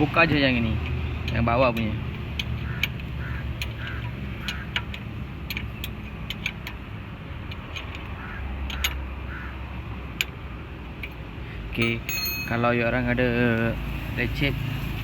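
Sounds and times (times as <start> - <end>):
spanner clicking on bolt: 0.8 - 9.0.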